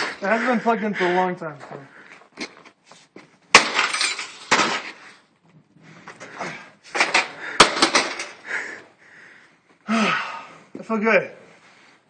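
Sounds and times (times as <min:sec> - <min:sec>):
heavy blows smashing a computer: 0:03.5 - 0:05.0, 0:07.0 - 0:08.4
metal and plastic crunching: 0:03.5 - 0:05.1, 0:06.9 - 0:08.4.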